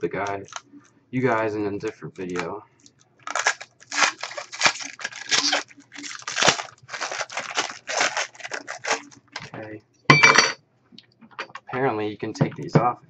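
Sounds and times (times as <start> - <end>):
packaging crinkling and tearing: 0.1 - 0.8, 2.3 - 9.5.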